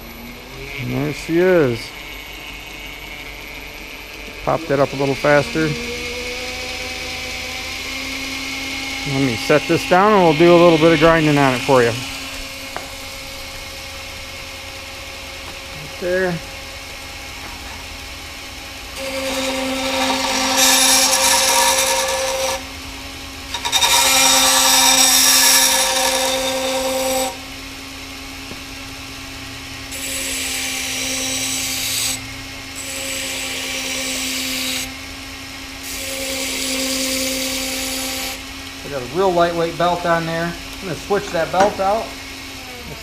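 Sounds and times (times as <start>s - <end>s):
belt grinder humming: 0.0s - 27.8s, 28.9s - 43.0s
hissing grind on sanding belt: 0.2s - 13.6s, 15.4s - 16.5s, 18.9s - 22.7s, 23.5s - 27.4s.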